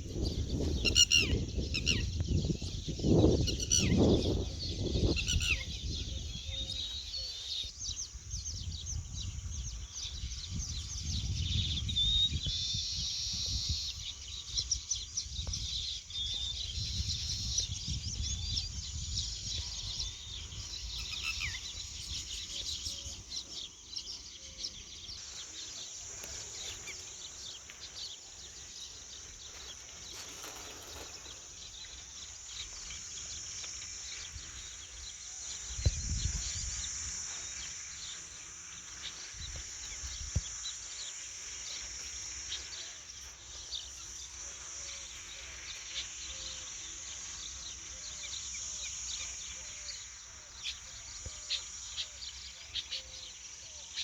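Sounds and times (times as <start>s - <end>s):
wind on microphone: 0.0s - 22.7s, 34.3s - 37.2s
birds chirping: 0.0s - 54.0s
insect drone: 0.0s - 54.0s.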